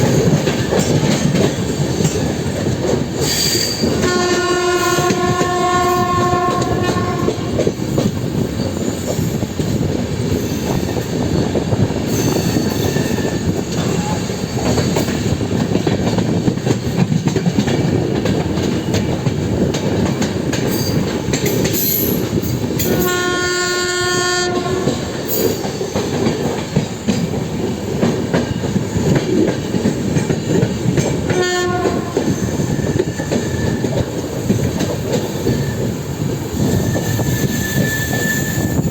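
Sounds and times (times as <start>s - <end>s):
train rumbling on track: 0.0s - 38.9s
locomotive horn blasts: 4.0s - 7.6s, 22.9s - 25.1s, 31.3s - 32.3s.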